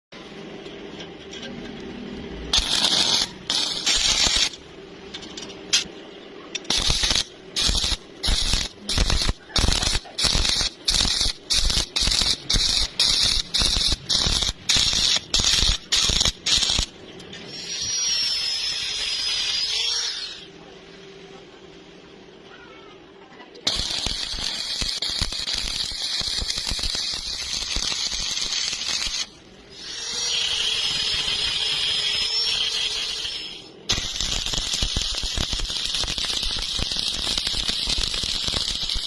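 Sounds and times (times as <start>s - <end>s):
welding arc crackling: 2.4s - 5.9s, 6.5s - 20.4s, 23.6s - 39.0s
hiss with high whistle: 17.5s - 20.5s, 23.7s - 39.0s.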